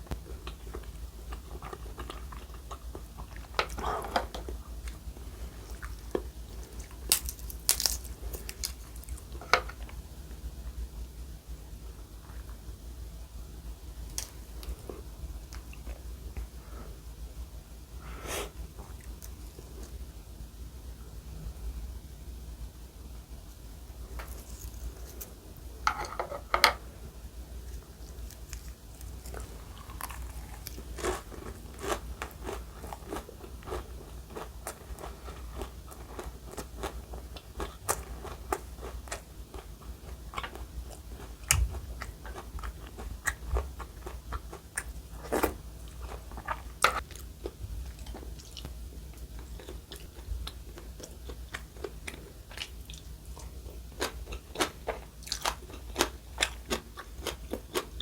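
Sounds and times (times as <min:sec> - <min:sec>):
steady low hum: 0:00.0 - 0:58.0
crunching of crisp food: 0:00.1 - 0:10.0, 0:24.0 - 0:26.5, 0:27.6 - 0:58.0.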